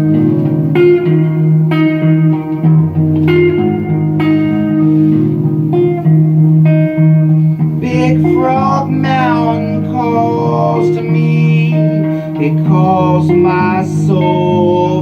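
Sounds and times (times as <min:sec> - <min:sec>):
plucked guitar with bass line: 0:00.0 - 0:15.0
person singing: 0:07.8 - 0:15.0.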